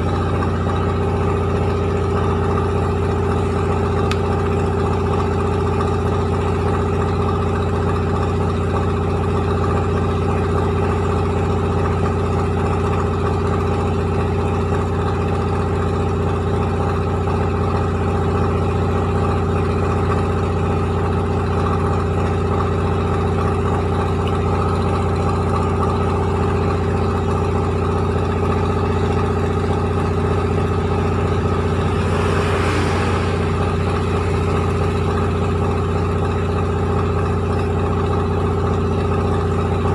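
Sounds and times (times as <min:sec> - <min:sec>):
rice milling machine humming: 0:27.7 - 0:39.6
rush of hiss: 0:31.3 - 0:35.7.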